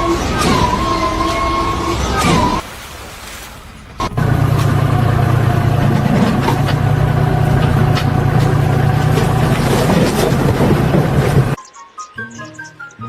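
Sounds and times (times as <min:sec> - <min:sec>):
machine engine humming: 0:04.0 - 0:11.6.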